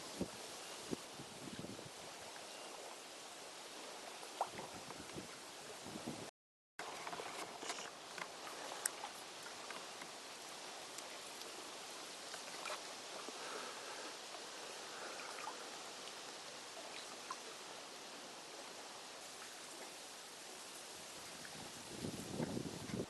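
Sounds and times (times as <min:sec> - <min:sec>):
steady rain falling: 0:08.0 - 0:22.8.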